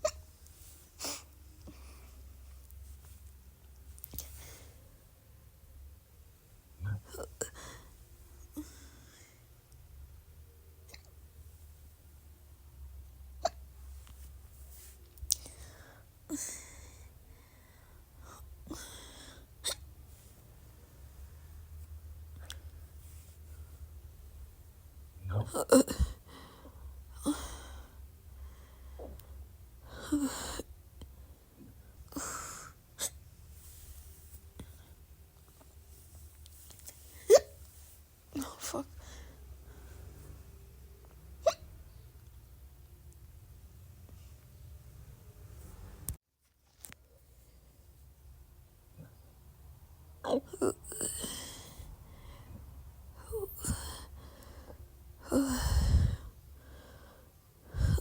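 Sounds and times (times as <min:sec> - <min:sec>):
breathy exhales: 0:53.6 - 0:58.0.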